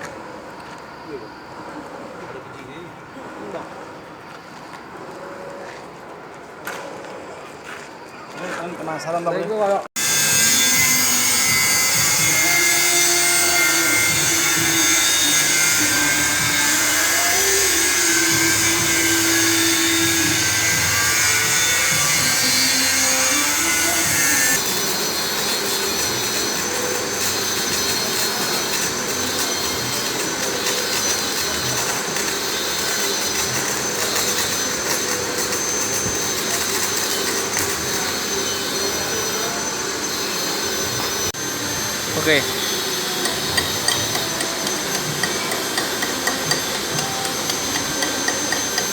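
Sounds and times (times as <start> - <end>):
thin high whines: 10.0 - 48.9
workshop machinery whirring: 10.0 - 48.9.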